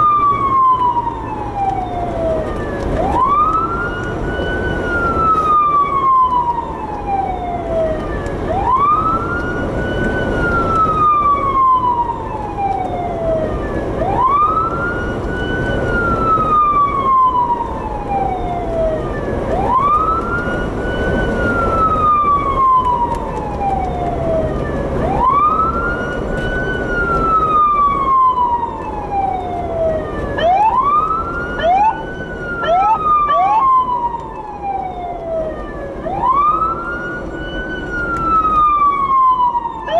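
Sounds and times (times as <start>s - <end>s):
police siren wailing: 0.0s - 39.9s
vehicle road noise: 0.0s - 39.9s
quick rising siren chirps: 19.6s - 35.4s.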